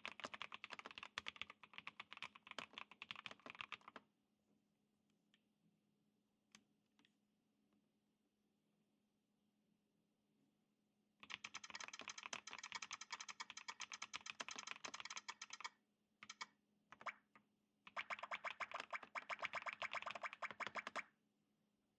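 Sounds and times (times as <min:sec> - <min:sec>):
fast typing on mechanical keyboard: 0:00.0 - 0:04.0, 0:11.2 - 0:16.4, 0:17.9 - 0:21.0.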